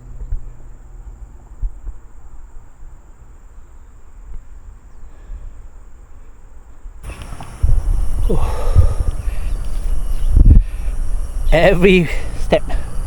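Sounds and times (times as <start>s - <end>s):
high-pitched insect drone: 7.0s - 13.0s.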